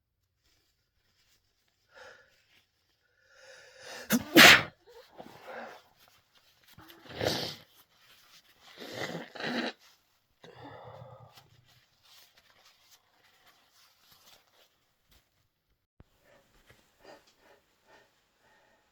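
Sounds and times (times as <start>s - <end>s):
man sneezing: 4.1s - 4.7s.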